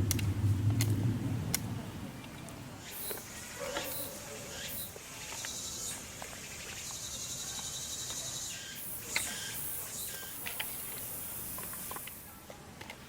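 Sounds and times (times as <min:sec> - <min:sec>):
insects chorus: 0:02.8 - 0:12.3.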